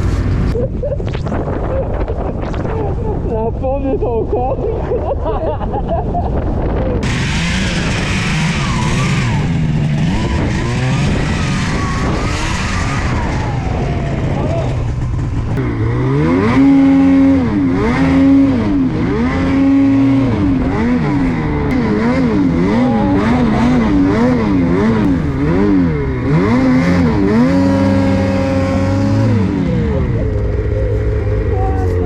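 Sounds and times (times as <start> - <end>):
vehicle engine revving: 7.0 - 32.0.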